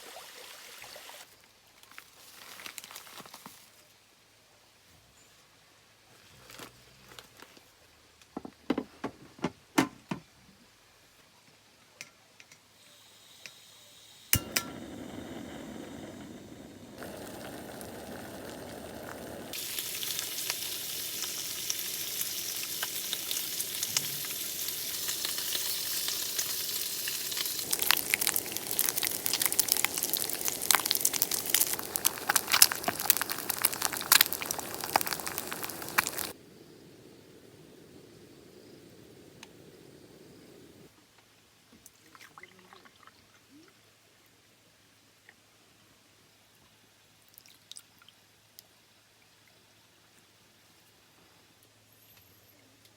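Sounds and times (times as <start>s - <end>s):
spits and crackles: 14.4s - 36.4s
food sizzling in a pan: 14.4s - 36.7s.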